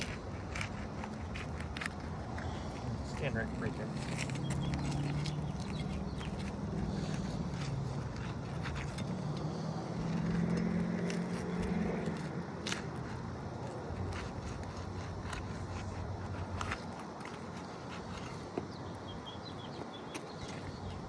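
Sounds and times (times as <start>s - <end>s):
steady low hum: 0.0s - 19.7s
roof shingle scraping and ticking: 0.0s - 21.0s.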